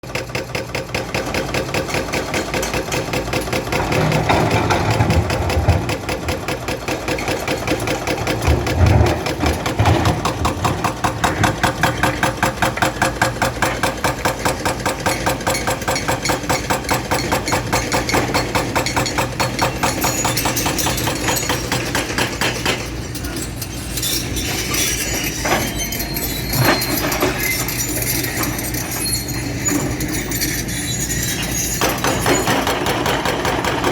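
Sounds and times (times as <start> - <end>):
excavator diesel engines working: 0.1 - 33.9
sharp metallic knocks: 8.4 - 23.0, 31.8 - 33.9.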